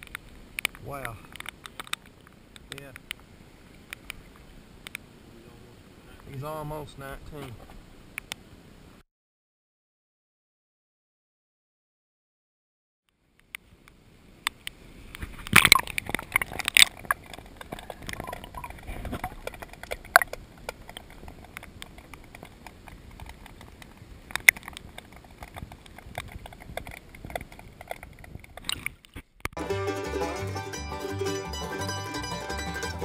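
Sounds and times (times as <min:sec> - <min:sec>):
steady hiss: 0:00.0 - 0:09.0.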